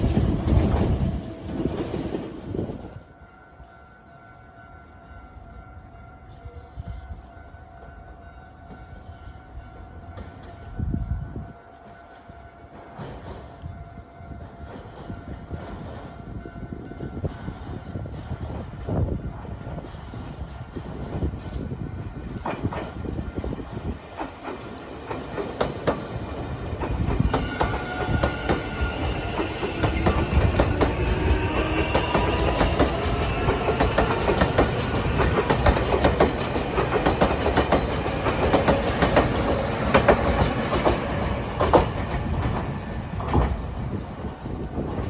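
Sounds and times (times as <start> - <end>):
rising train whine: 0.0 - 45.0
train wheels clacking: 23.9 - 43.6.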